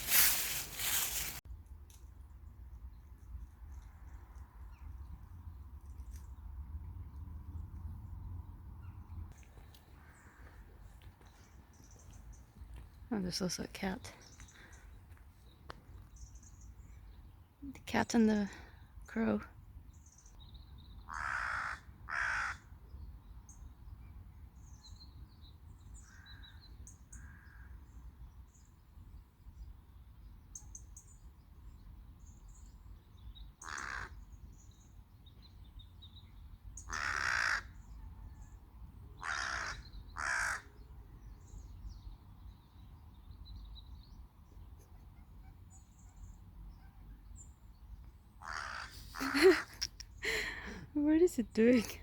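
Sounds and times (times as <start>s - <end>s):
small birds chirping: 8.8s - 21.2s, 39.2s - 52.0s
crows cawing: 21.1s - 22.7s, 27.2s - 27.7s, 33.6s - 34.2s, 36.9s - 37.8s, 39.2s - 40.7s, 48.4s - 49.6s.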